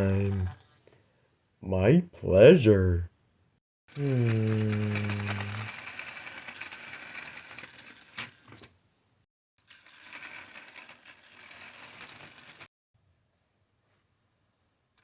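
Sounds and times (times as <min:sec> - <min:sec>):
model train rattle and whir: 0:00.0 - 0:00.6, 0:03.9 - 0:08.7, 0:09.6 - 0:12.7.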